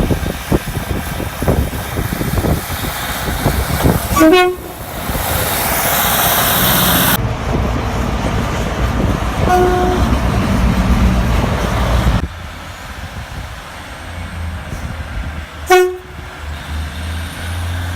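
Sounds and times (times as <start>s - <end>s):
train rumble and hiss: 0.0s - 17.9s
train horn toots: 4.1s - 4.8s, 9.4s - 10.2s, 15.6s - 16.2s.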